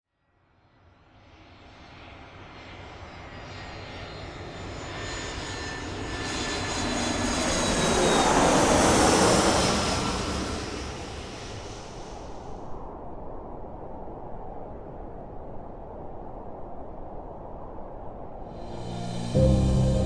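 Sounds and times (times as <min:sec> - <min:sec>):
airplane flying past: 0:01.2 - 0:12.6, 0:18.5 - 0:20.0.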